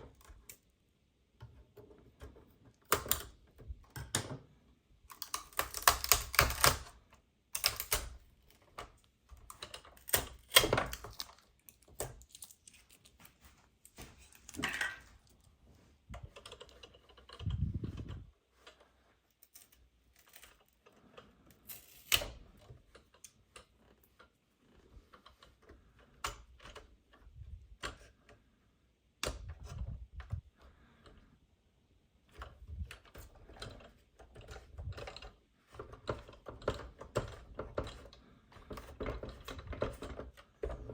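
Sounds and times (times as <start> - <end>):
plastic toys clicking and tapping: 1.4 - 4.5, 5.1 - 13.2, 16.2 - 18.8, 32.3 - 40.9.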